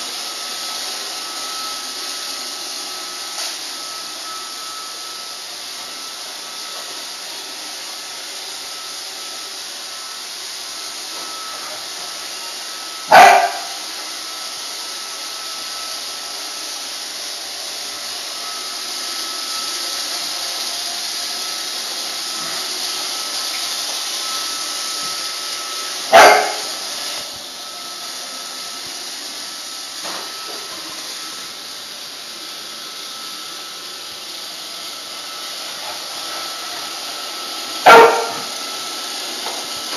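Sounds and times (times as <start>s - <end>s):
robot vacuum running: 0.0s - 39.9s
dog barking loudly: 13.1s - 13.8s, 26.1s - 26.7s, 37.8s - 38.5s.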